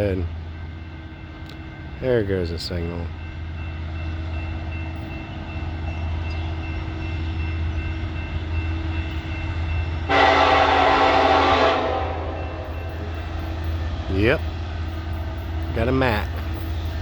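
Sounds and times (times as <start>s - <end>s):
locomotive air horn chord: 10.1s - 12.9s.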